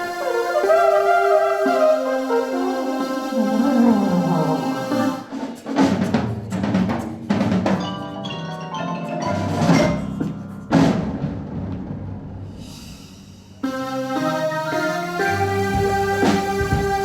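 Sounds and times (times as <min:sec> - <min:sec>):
drums: 0:03.3 - 0:14.4, 0:15.2 - 0:17.0
bell-like mallet notes: 0:07.8 - 0:10.8
heavy percussion hits: 0:09.3 - 0:13.6.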